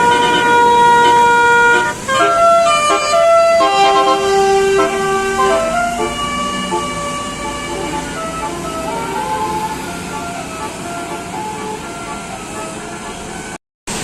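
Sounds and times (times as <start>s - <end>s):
multi-tone bus horn melody: 0.0s - 14.0s.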